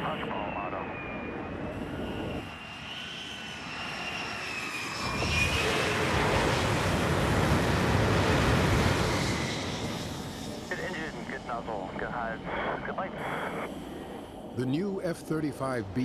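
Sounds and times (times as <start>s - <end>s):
jet engine rushing noise: 0.0s - 16.0s
jet engine whine: 0.0s - 16.0s.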